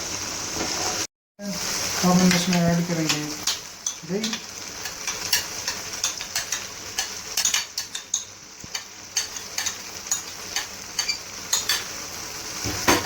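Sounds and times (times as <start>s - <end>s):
meat sizzling in a pan: 0.0s - 13.0s
spoon clinking and scraping metal: 3.4s - 12.0s.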